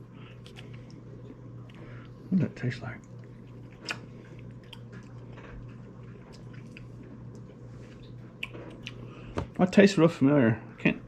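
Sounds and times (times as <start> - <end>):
person chewing food: 0.0 - 2.2, 3.0 - 9.3
steady low hum: 0.0 - 11.0.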